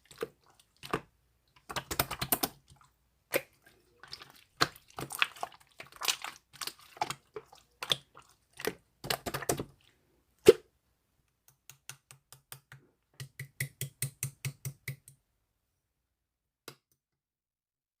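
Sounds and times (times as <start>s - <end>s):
irregular clicking and tapping: 11.3s - 15.2s.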